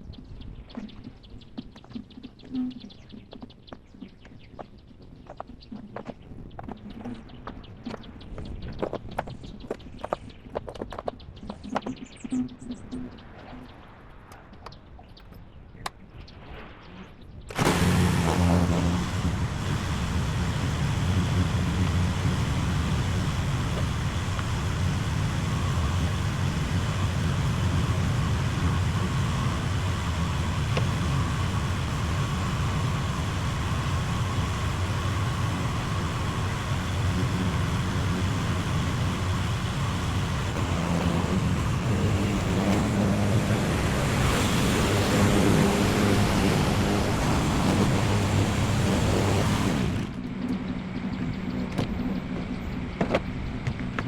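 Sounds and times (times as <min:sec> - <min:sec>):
loader engine running and revving: 0:17.5 - 0:54.0.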